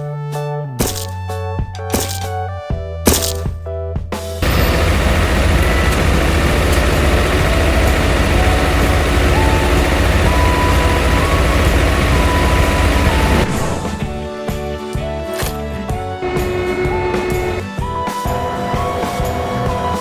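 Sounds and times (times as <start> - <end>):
heavy engine rumbling: 4.4 - 13.9.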